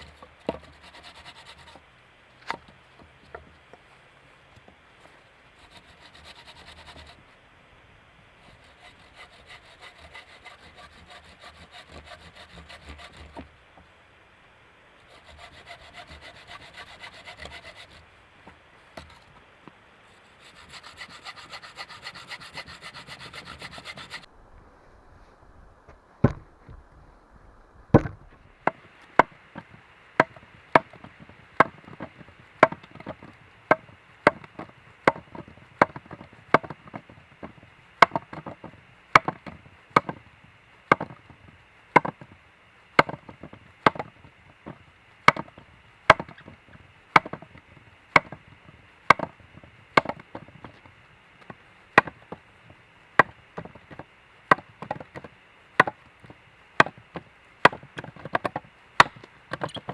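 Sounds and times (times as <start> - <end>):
axe chopping wood: 27.9 - 29.4, 30.2 - 40.2, 40.9 - 41.2, 42.0 - 42.2, 43.0 - 44.1, 45.3 - 46.5, 47.1 - 48.4, 49.1 - 49.3, 50.0 - 50.8, 51.4 - 52.3, 53.2 - 56.0, 56.8 - 59.9.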